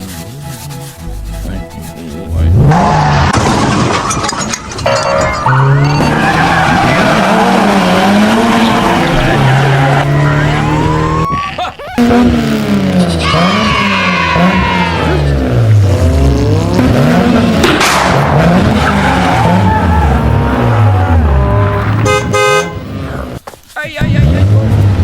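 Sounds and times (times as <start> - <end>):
engine revving: 2.3 - 3.5, 5.7 - 11.3, 12.0 - 23.4, 24.0 - 25.0
high tyre squeal glides: 5.4 - 11.3.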